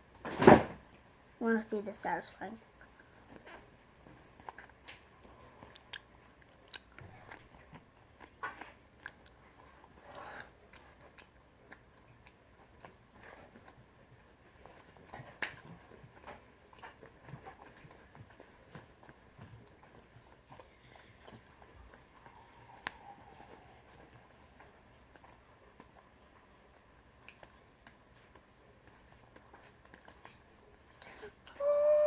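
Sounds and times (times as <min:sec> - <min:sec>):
chewing rice cakes: 0:02.7 - 0:31.6
wet mouth clicks and smacks: 0:05.6 - 0:09.4, 0:26.7 - 0:31.2.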